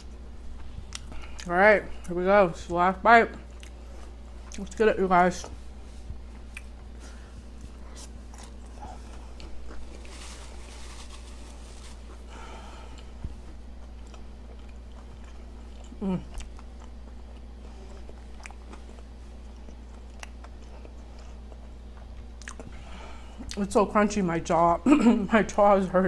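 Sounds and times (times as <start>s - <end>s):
low hum: 0.0s - 21.6s
chewing crunchy burger: 3.4s - 4.8s, 5.5s - 23.7s.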